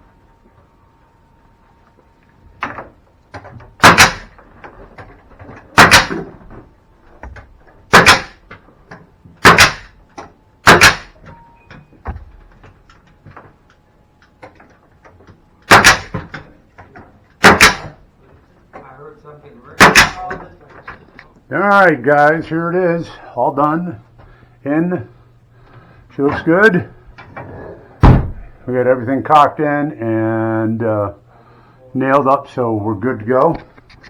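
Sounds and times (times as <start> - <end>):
hammer driving nails: 3.8 - 4.4, 5.6 - 6.3, 7.9 - 8.5, 9.4 - 11.2, 15.6 - 16.4, 17.4 - 18.0, 19.8 - 20.3.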